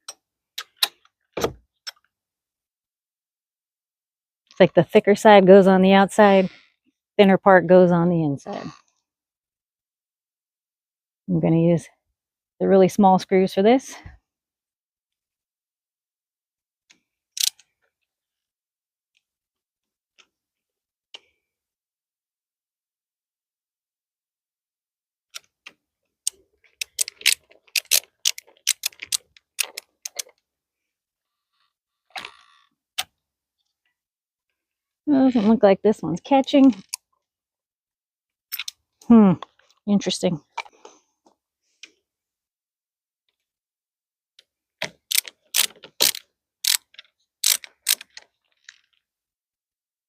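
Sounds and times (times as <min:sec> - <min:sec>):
screwdriver ratchet-like clicks: 0:26.8 - 0:30.2, 0:45.1 - 0:48.2
screwdriver clicking: 0:47.4 - 0:48.1.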